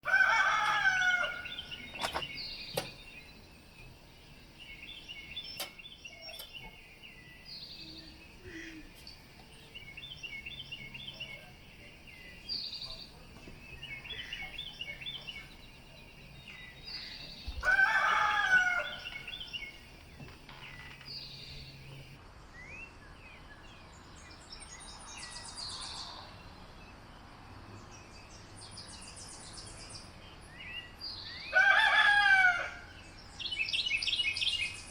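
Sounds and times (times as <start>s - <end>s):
rooster crowing: 0.0s - 1.8s, 17.6s - 19.6s, 31.5s - 32.9s
songbirds chirping and singing: 0.0s - 34.9s.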